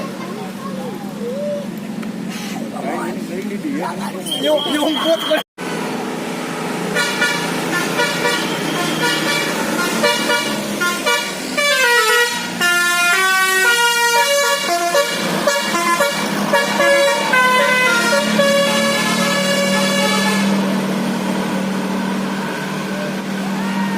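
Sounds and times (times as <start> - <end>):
musical vehicle horn playing a tune: 7.0 - 20.6.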